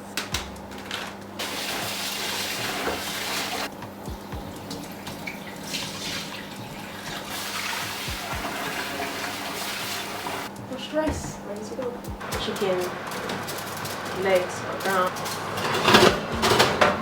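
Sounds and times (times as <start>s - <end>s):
tap running water over rice: 1.4s - 10.6s, 12.2s - 15.4s.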